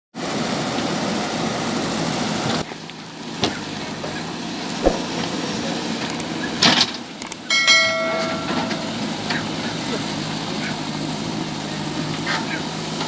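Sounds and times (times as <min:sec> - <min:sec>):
diesel engine running: 0:00.3 - 0:07.4, 0:08.0 - 0:13.0
sharp knocks: 0:04.8 - 0:05.3.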